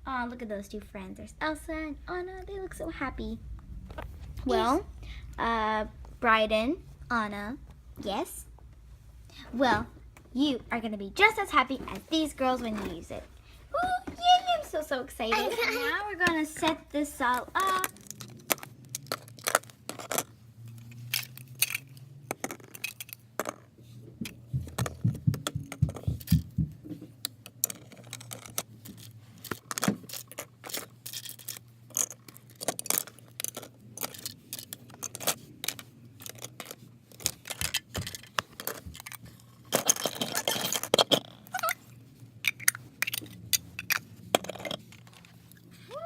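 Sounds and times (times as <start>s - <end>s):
steady low hum: 0.0s - 22.3s
toy cups and saucers clattering: 15.4s - 23.7s, 27.5s - 45.4s
low thumps: 24.4s - 27.1s.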